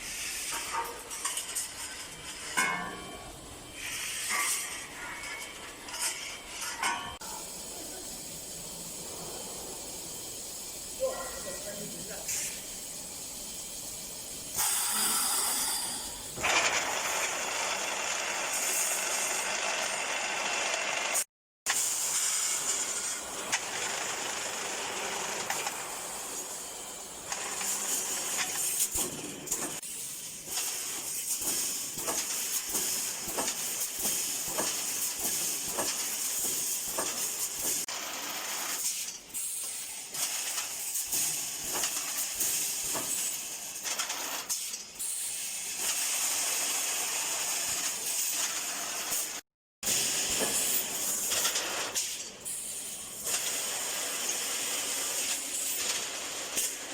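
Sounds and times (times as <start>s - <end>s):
pneumatic air cylinders hissing: 6.1s - 16.9s, 21.7s - 56.9s
machine clicks and clanks: 23.4s - 26.0s, 30.4s - 45.1s, 47.4s - 52.6s, 53.2s - 56.9s.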